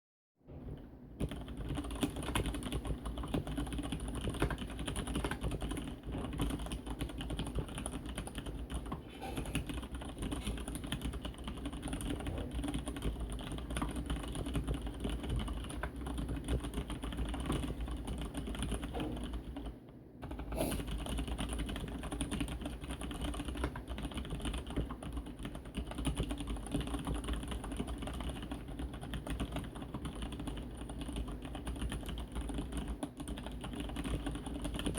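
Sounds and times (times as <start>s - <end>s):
fast typing on mechanical keyboard: 0.7s - 34.9s
desk hollow boom: 18.8s - 19.4s.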